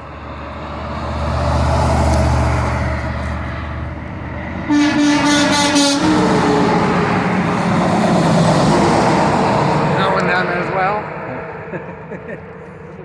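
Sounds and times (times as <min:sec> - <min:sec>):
truck engine rumble: 0:00.0 - 0:13.0
air horn blast: 0:04.6 - 0:07.4.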